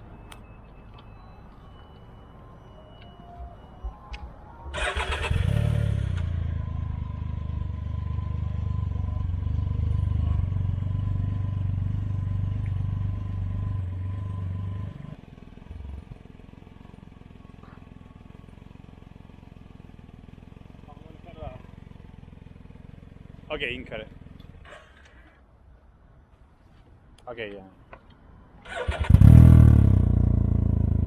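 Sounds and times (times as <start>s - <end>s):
engine cranking and idling: 4.7s - 7.0s, 28.6s - 29.8s.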